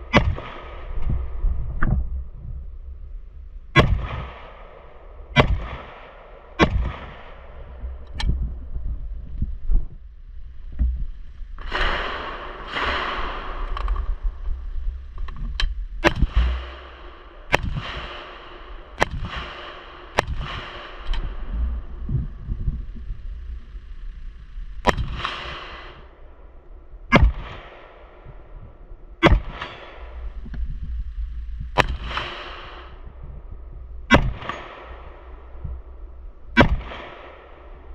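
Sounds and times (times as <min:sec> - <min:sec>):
gunshots with echoes: 0:00.0 - 0:01.4, 0:03.7 - 0:07.6, 0:11.6 - 0:14.5, 0:16.0 - 0:22.1, 0:24.8 - 0:26.4, 0:27.1 - 0:28.3, 0:29.2 - 0:30.4, 0:31.8 - 0:33.1, 0:34.1 - 0:35.9, 0:36.6 - 0:37.9.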